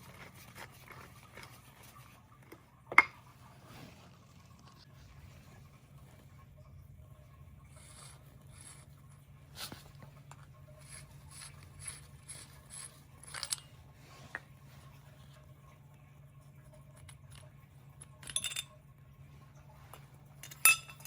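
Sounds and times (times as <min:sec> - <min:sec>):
hand tools scraping and ratcheting: 0:10.9 - 0:13.7.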